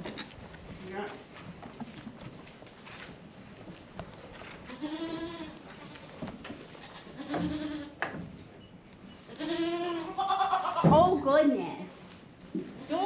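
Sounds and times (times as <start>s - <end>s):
goats bleating: 4.7s - 8.0s, 9.3s - 10.9s.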